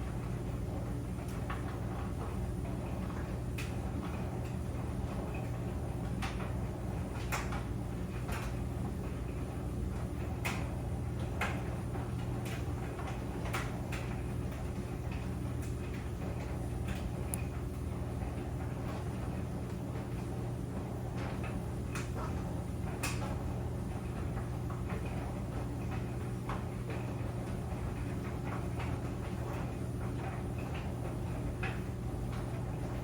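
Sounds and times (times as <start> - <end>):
clothes dryer humming: 0.0 - 33.0.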